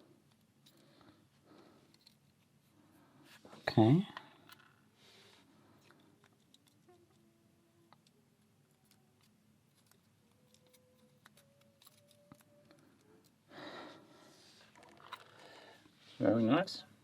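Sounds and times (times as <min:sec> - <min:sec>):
small clicks of lock parts: 0:05.8 - 0:07.2, 0:07.9 - 0:13.4.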